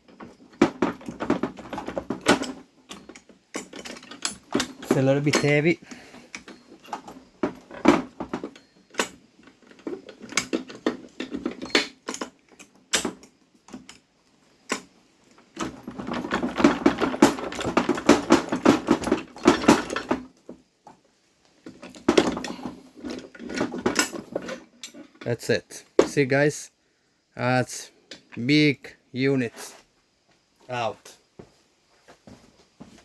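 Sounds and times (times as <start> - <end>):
metal gears clinking against case: 0.0 - 20.3.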